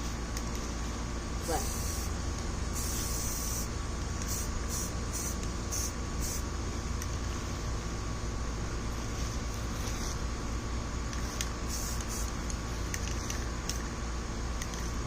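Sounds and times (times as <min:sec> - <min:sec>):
steady low hum: 0:00.0 - 0:15.0
aerosol spray can hissing: 0:01.4 - 0:02.1, 0:02.7 - 0:06.4, 0:11.2 - 0:12.4.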